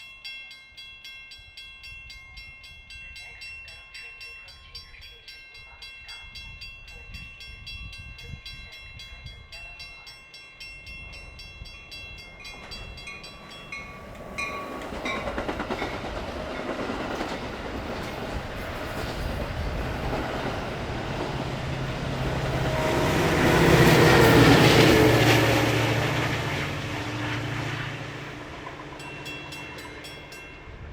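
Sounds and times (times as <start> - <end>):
diesel locomotive rumble: 12.3 - 30.9.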